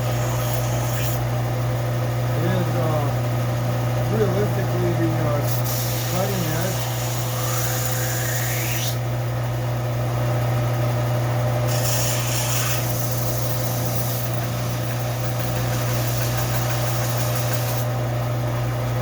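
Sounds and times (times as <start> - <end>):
blade scraping on abrasive: 0.0 - 1.2, 11.7 - 17.9
steady low hum: 0.0 - 19.0.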